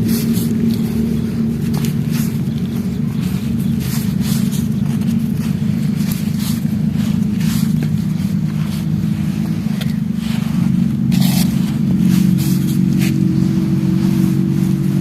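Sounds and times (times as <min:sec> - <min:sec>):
loud low hum: 0:00.0 - 0:15.0.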